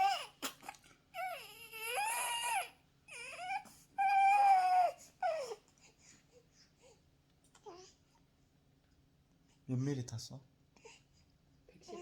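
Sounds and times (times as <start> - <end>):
newborn baby crying: 0.0 - 5.7.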